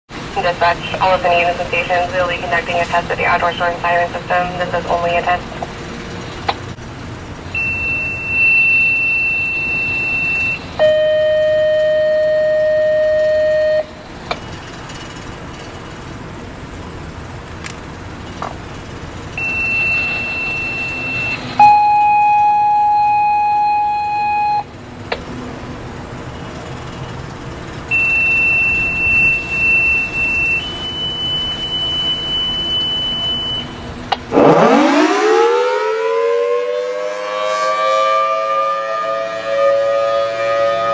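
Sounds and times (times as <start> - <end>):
steady radio beeps: 0.4 - 5.7, 7.6 - 14.6, 19.3 - 24.7, 27.9 - 33.8
siren winding up: 19.4 - 24.7, 27.9 - 38.7.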